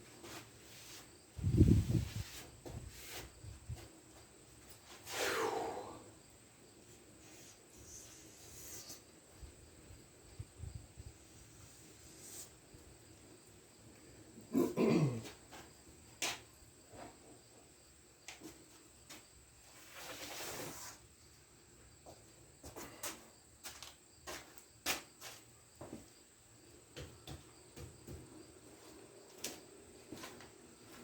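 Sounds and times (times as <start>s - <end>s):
soft rushing hiss: 0.0s - 14.3s, 18.3s - 21.7s.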